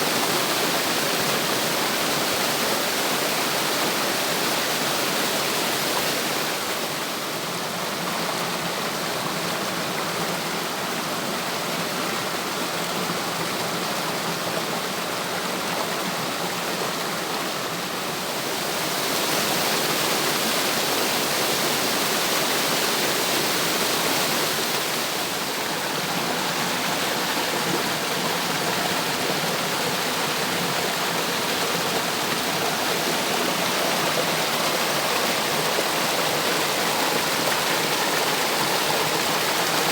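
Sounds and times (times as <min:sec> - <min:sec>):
water rushing over cascade: 0:00.0 - 0:39.9.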